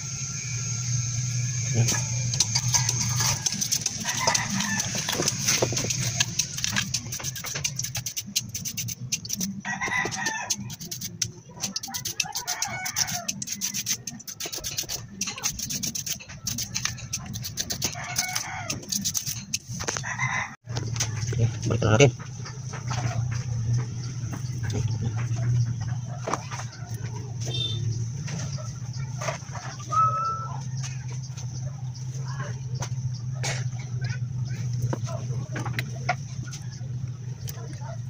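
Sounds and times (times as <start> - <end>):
steady low hum: 0.0 - 20.1
chickens clucking: 1.8 - 38.0
rooster crowing: 2.5 - 6.3, 9.4 - 10.9, 11.7 - 13.9, 17.2 - 19.0, 19.9 - 20.6.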